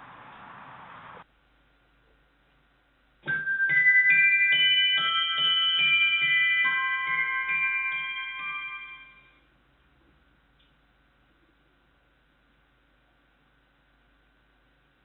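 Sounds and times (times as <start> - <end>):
bell-like keyboard notes: 3.3 - 9.5.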